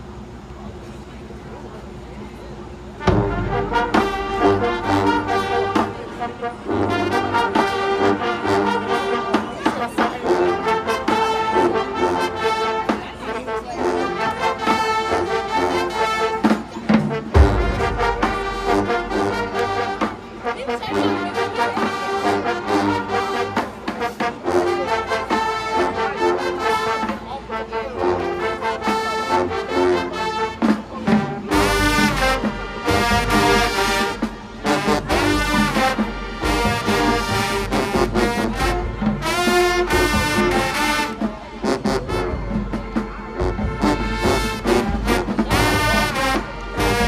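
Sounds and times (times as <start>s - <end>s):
brass playing loud chords: 3.0s - 47.0s
sharp percussion hits: 16.9s - 20.3s.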